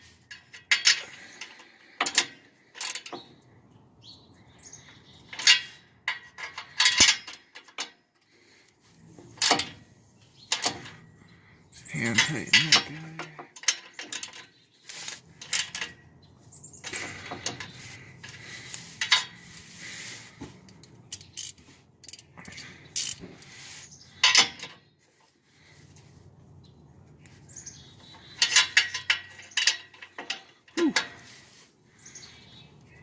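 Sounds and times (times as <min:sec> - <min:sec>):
ratchet clicking: 0:20.7 - 0:23.2.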